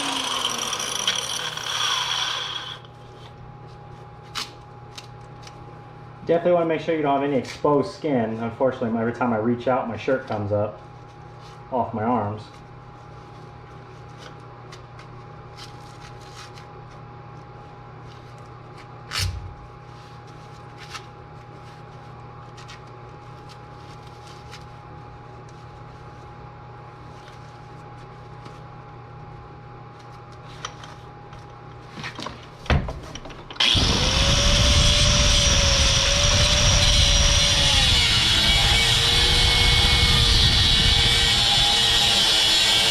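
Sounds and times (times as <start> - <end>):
power tool cutting metal: 0.0 - 2.9, 33.6 - 42.9.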